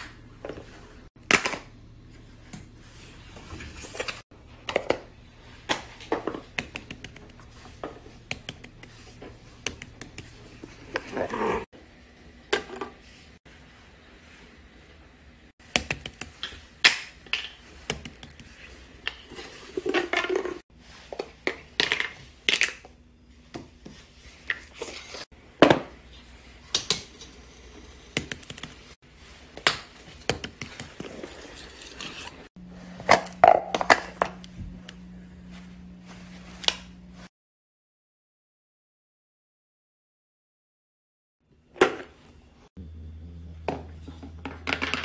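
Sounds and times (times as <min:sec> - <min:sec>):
low steady hum: 0:32.6 - 0:37.3.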